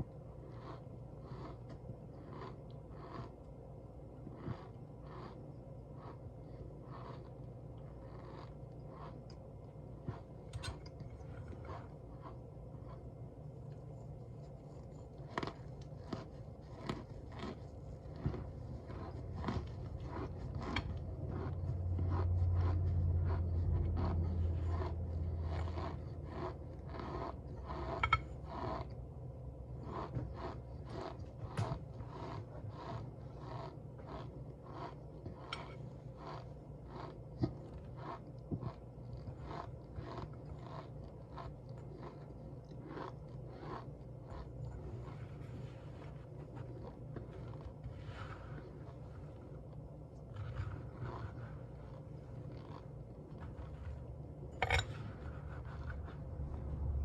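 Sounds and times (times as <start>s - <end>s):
low hum: 0.0s - 57.0s
cornstarch crunching and squeaking: 2.2s - 3.4s.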